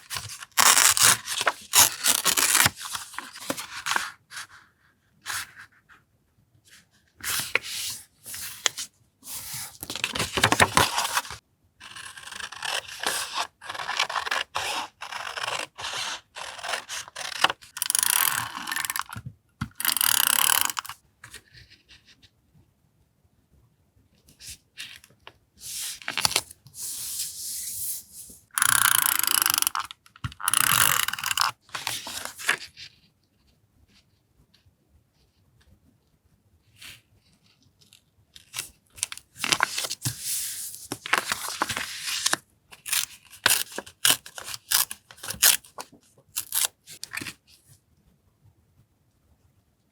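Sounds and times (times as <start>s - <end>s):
paper rubbed and scraped: 25.6s - 28.4s.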